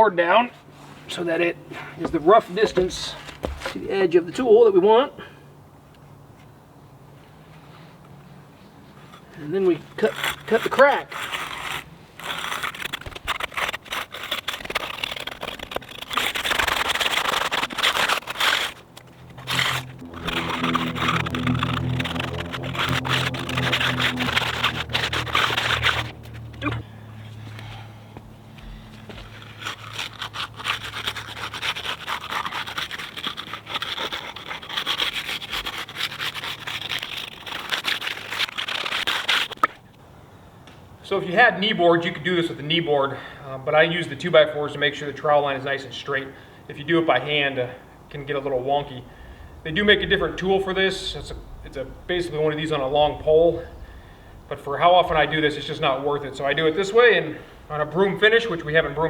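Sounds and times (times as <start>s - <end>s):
concrete groover scraping wet concrete: 1.1s - 4.7s, 9.2s - 26.8s, 28.9s - 39.7s, 48.1s - 53.9s, 54.5s - 59.0s
low hum: 14.6s - 31.5s, 47.9s - 59.0s.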